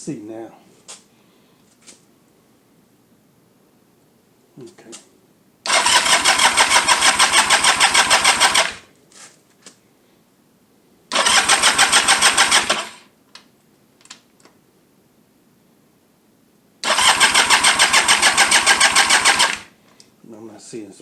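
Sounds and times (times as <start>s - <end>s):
motorcycle engine cranking: 5.7s - 8.9s, 11.1s - 13.0s, 16.8s - 19.7s.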